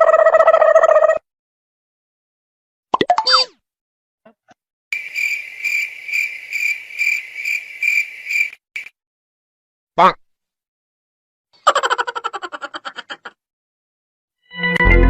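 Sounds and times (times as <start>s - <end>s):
cricket chirping: 5.0s - 8.9s.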